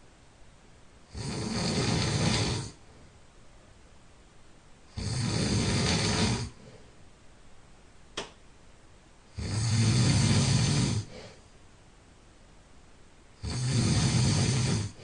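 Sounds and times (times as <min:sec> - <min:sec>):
person snoring: 0:01.1 - 0:02.8, 0:04.9 - 0:06.8, 0:09.3 - 0:11.4, 0:13.4 - 0:15.0
quiet breathing: 0:01.1 - 0:03.3, 0:05.0 - 0:07.2, 0:09.4 - 0:11.6, 0:13.4 - 0:15.0.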